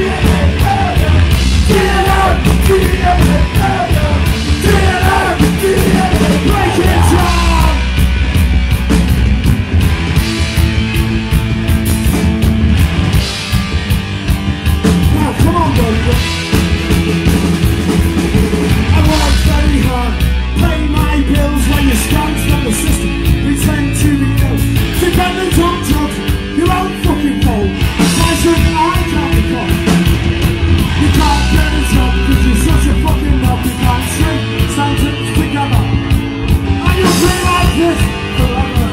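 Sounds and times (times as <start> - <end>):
shouted vocals: 0.0 - 7.9
driving drum beat: 0.0 - 38.9
punk rock band playing: 0.0 - 38.9.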